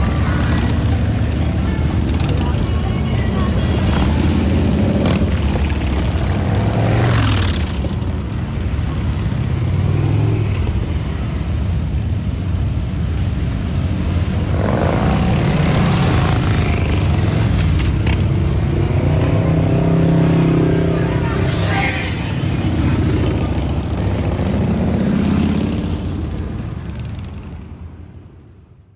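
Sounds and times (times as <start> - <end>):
motorcycle engines revving: 0.0 - 28.2.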